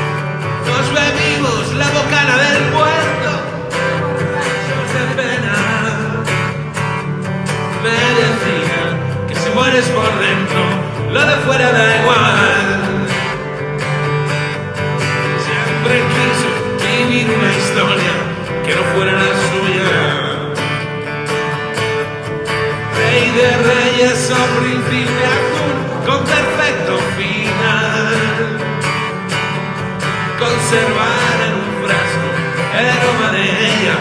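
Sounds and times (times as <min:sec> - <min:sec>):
rock band playing: 0:00.0 - 0:19.2
wavering lead melody: 0:01.0 - 0:06.4.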